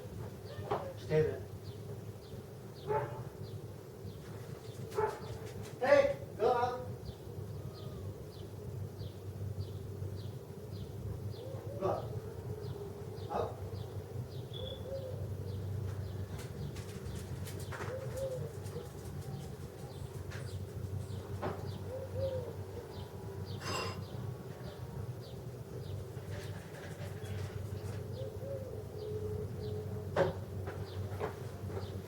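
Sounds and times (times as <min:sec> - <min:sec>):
steady low hum: 0:00.0 - 0:32.0
doves cooing: 0:07.1 - 0:08.6, 0:10.8 - 0:32.0.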